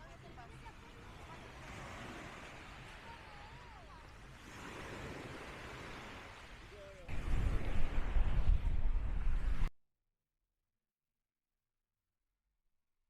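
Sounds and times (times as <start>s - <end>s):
small waves washing on beach: 0.0s - 9.7s.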